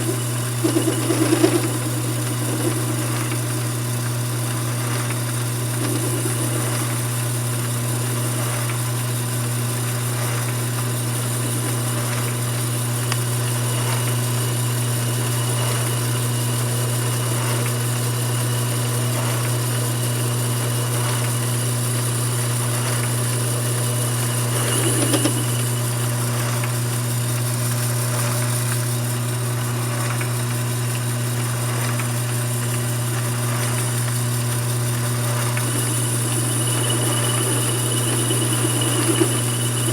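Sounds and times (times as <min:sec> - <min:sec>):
lathe motor humming: 0:00.0 - 0:09.2, 0:23.0 - 0:27.2, 0:33.8 - 0:39.9.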